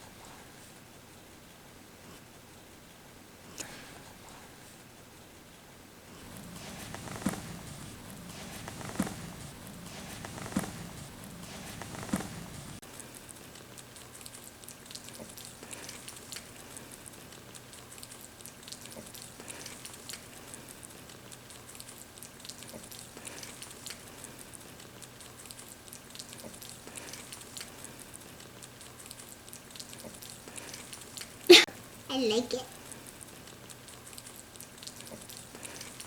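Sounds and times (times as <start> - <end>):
rabbits munching leaves: 6.1 - 36.0
faint hum: 6.2 - 12.8
leaves rustling: 6.2 - 12.8.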